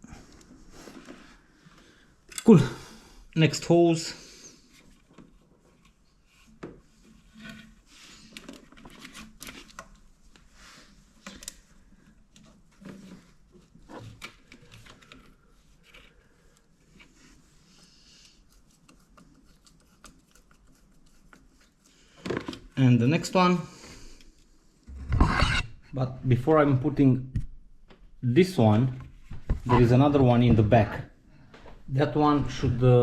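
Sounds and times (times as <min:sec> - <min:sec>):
hands working rubber hose: 0:04.7 - 0:22.8.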